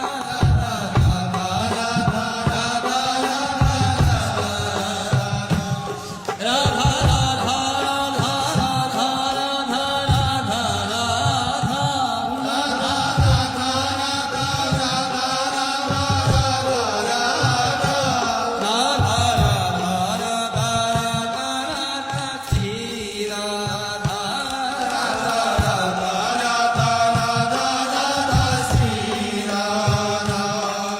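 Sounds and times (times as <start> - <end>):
person chanting a sung melody: 0.0 - 30.9
steady drum beat: 0.0 - 30.9.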